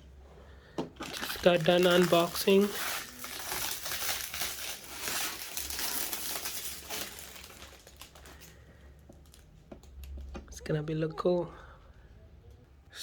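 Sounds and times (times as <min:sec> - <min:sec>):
plastic packaging crinkling: 0:01.0 - 0:08.6.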